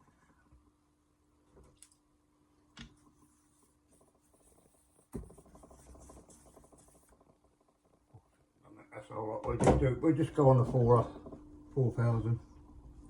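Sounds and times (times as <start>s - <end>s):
faint steady hum: 0.0s - 13.0s
faint fine scratching: 3.1s - 7.4s.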